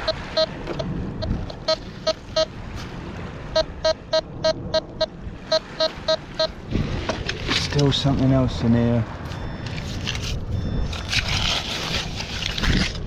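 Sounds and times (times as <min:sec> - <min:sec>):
metal detector beeping: 0:00.0 - 0:02.6, 0:03.6 - 0:06.6, 0:09.3 - 0:11.2.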